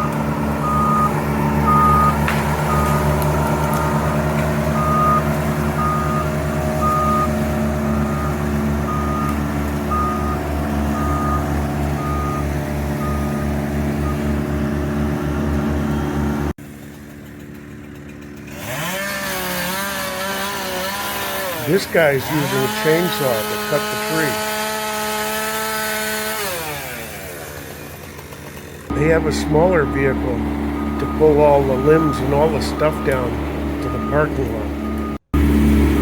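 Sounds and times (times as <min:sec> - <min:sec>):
reversing alarm beeping: 0:00.0 - 0:14.4, 0:28.9 - 0:35.2
diesel vehicle engine running: 0:00.0 - 0:36.0.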